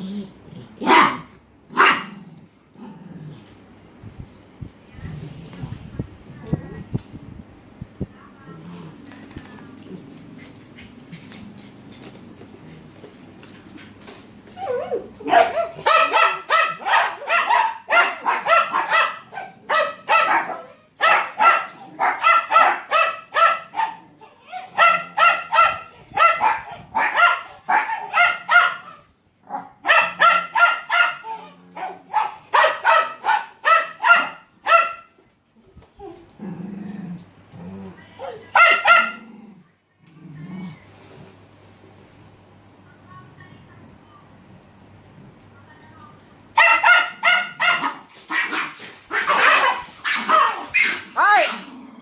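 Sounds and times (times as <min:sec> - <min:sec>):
dogs barking angrily: 0:00.8 - 0:02.3, 0:14.9 - 0:35.1, 0:38.4 - 0:39.3, 0:46.6 - 0:52.0.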